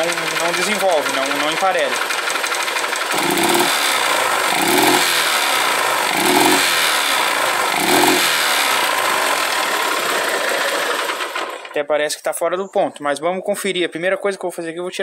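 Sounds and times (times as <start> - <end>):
motorcycle engine misfiring when revved: 0.0 - 11.8.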